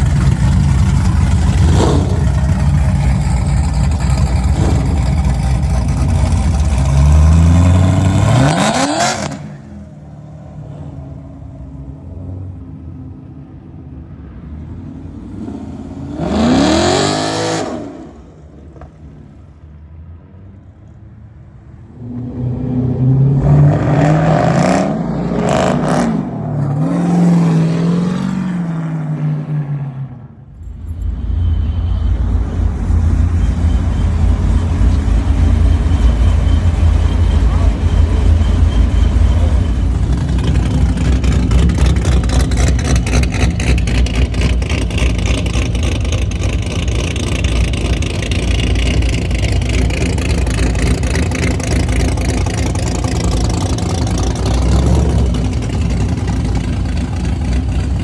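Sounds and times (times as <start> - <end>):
exhaust cracks: 0.0 - 10.2, 30.5 - 58.0
car engines revving: 0.0 - 58.0.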